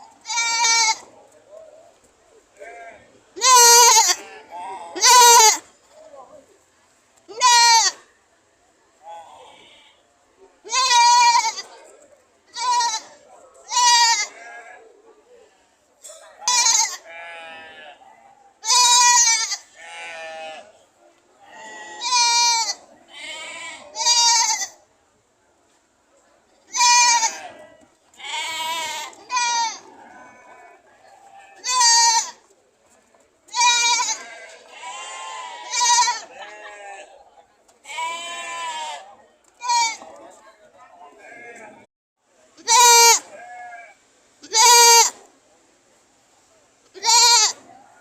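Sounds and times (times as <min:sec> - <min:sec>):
goats bleating: 0:00.2 - 0:01.1, 0:02.6 - 0:05.6, 0:07.3 - 0:08.0, 0:10.7 - 0:11.7, 0:12.5 - 0:14.7, 0:16.4 - 0:18.0, 0:18.6 - 0:20.7, 0:21.5 - 0:24.8, 0:26.7 - 0:32.4, 0:33.5 - 0:37.1, 0:37.8 - 0:40.1, 0:42.6 - 0:45.2, 0:47.0 - 0:47.6.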